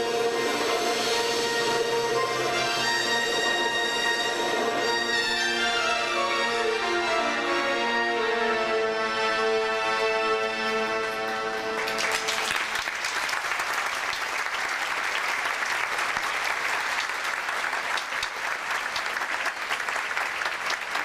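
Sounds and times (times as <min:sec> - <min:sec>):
audience applause: 0:10.4 - 0:21.0.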